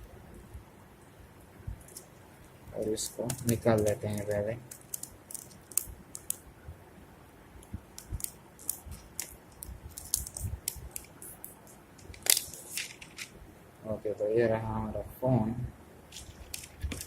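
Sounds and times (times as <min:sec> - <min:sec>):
phone packaging clicks and rustles: 0:02.9 - 0:06.4, 0:08.0 - 0:13.4, 0:16.1 - 0:17.0.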